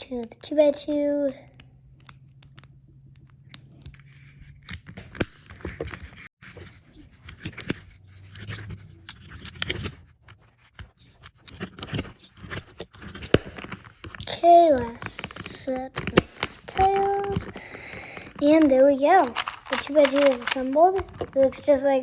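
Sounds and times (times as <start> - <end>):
plastic puzzle cube clicks: 15.1 - 21.4.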